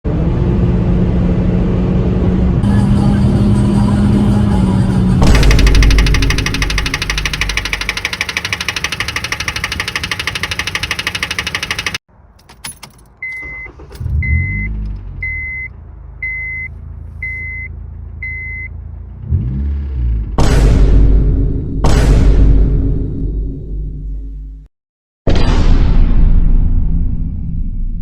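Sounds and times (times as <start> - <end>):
car engine knocking: 5.2 - 12.0
engine cranking: 5.2 - 15.0
dashboard warning chime beeping: 5.4 - 12.0, 12.7 - 18.7.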